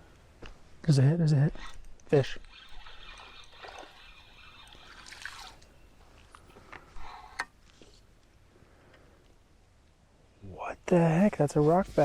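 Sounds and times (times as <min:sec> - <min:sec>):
water splashing and dripping: 0:03.1 - 0:05.7.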